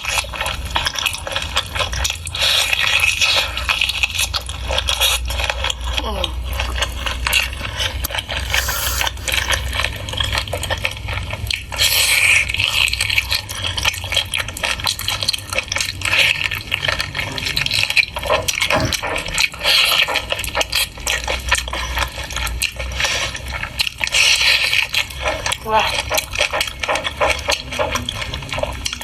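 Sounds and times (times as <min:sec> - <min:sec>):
wet chewing and lip smacking: 0:06.0 - 0:09.8, 0:18.6 - 0:19.1.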